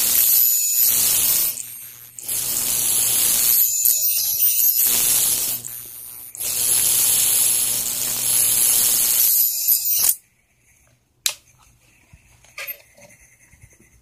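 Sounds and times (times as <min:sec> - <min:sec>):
plasma rig hissing: 0:00.0 - 0:10.2.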